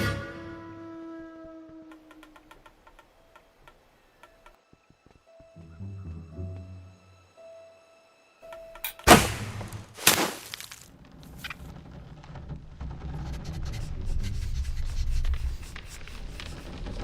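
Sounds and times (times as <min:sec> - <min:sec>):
loud cartoon impacts: 0:09.0 - 0:10.8.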